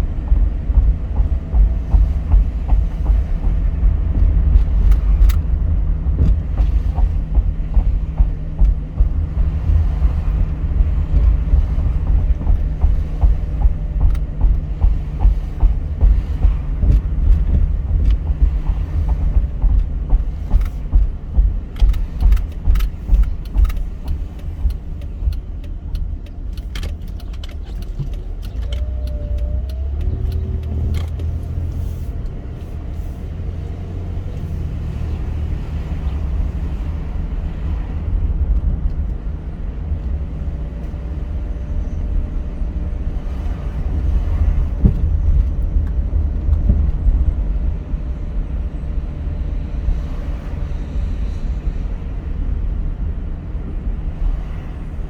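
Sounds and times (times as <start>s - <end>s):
rapid clicks and knocks: 0.0s - 31.7s
car road and engine rumble: 0.0s - 55.0s.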